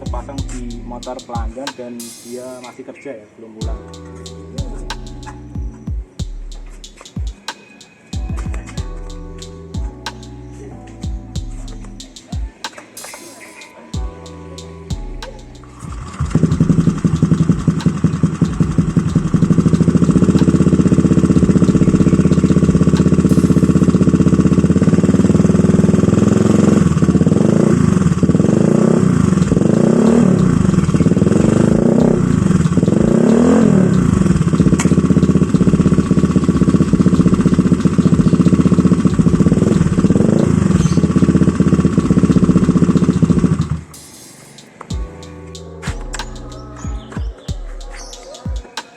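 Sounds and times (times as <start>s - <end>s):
scooter engine idling and revving: 15.9s - 43.9s.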